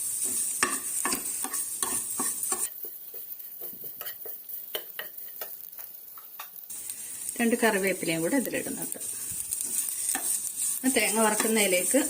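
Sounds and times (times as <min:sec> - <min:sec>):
food sizzling in oil: 0:00.0 - 0:12.0
spatula scraping a pan: 0:00.1 - 0:06.6, 0:09.0 - 0:12.0.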